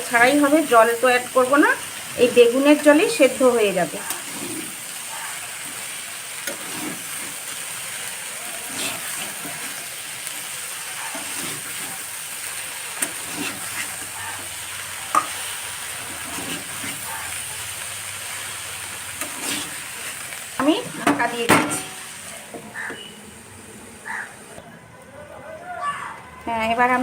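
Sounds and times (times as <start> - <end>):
vegetables sizzling in oil: 0.0 - 24.6
spatula scraping and knocking pan: 4.0 - 4.9, 5.6 - 7.6, 8.5 - 9.8, 11.0 - 12.1, 12.9 - 17.3, 19.1 - 23.1.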